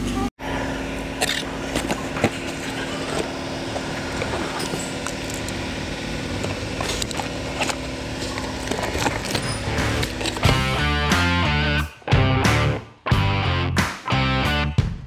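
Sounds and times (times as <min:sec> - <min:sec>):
steady mechanical hum: 0:00.0 - 0:12.2.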